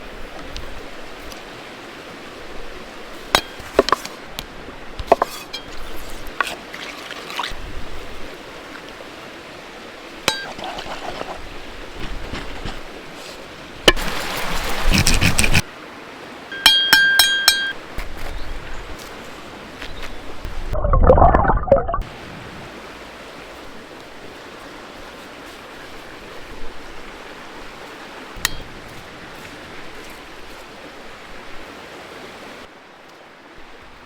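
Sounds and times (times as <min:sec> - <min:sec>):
cookware and utensils clinking: 0:05.1 - 0:06.6, 0:10.3 - 0:11.3.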